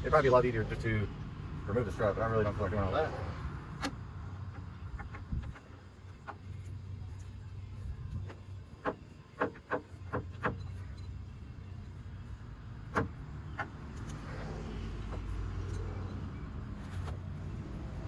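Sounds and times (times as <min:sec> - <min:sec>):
passing vehicle rush: 0:00.0 - 0:05.1, 0:13.3 - 0:18.0
steady low hum: 0:00.0 - 0:18.0.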